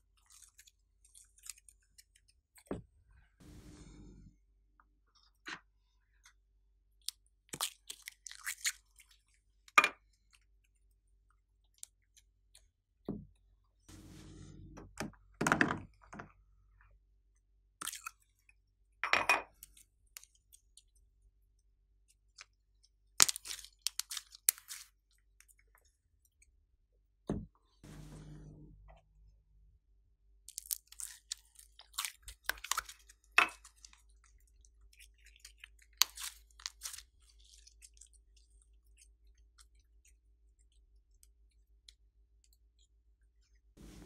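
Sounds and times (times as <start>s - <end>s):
slime squishing and crackling: 30.5s - 40.0s.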